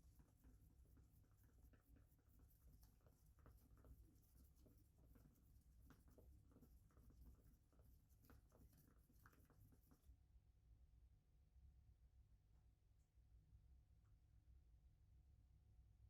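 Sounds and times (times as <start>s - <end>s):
faint scratching and ticking: 0.0s - 10.1s.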